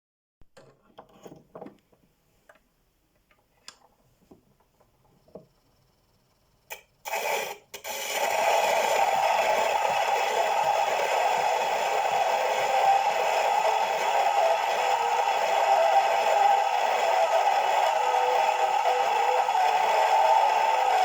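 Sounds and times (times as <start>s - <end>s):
faint clicks and knocks: 0.5s - 6.8s.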